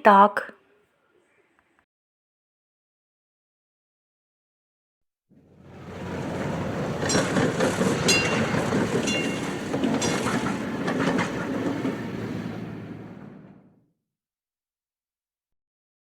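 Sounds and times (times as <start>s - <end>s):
tram rumbling on rails: 5.4s - 13.8s
metallic wheel clicks on track: 7.0s - 11.5s.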